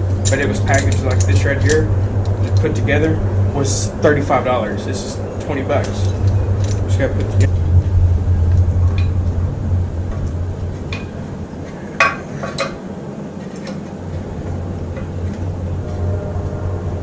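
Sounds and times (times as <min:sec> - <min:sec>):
metal tool parts clinking: 0:12.0 - 0:12.7.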